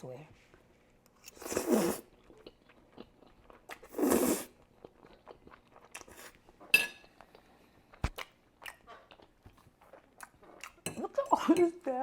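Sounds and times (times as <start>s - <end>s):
chewing and wet mouth clicks: 4.8s - 6.2s, 7.2s - 10.8s.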